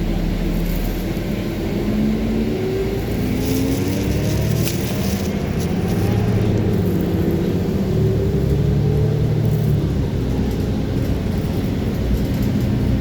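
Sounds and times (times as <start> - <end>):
bus engine whine: 0.0 - 13.0
low rumble: 0.0 - 13.0.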